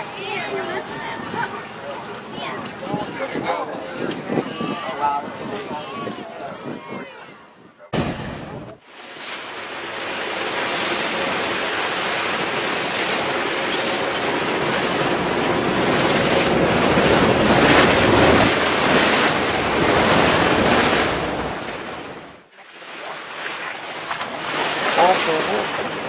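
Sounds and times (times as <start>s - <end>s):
wind buffeting microphone: 2.4s - 8.8s, 10.3s - 22.3s
sea water rushing: 8.0s - 26.0s.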